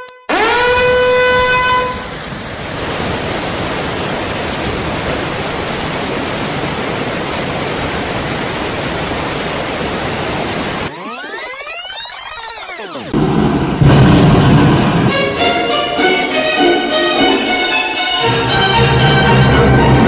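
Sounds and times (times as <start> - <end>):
held horn-like tone: 0.0 - 2.1
rushing water roar: 1.0 - 10.9.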